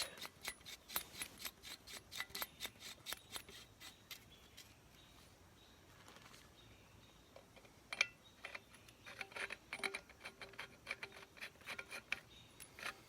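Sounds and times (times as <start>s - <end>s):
metal handle sections clicking: 7.4s - 13.0s
metal scraping: 7.5s - 13.0s.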